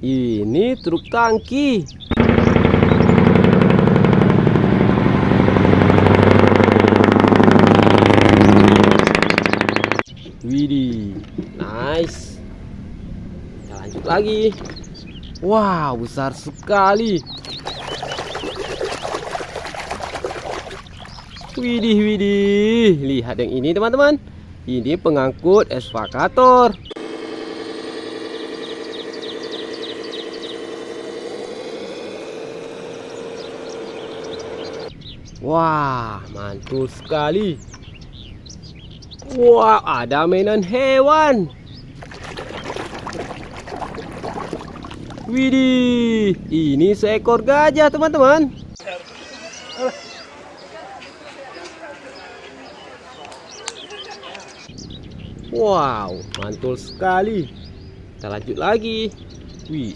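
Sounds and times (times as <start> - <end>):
engine running with rapid pulse: 2.0 - 10.1, 26.8 - 35.1
engine-like drone: 2.0 - 22.8, 24.3 - 39.5, 41.5 - 48.8, 54.6 - 59.9
high chirps: 17.2 - 22.0, 27.8 - 35.4.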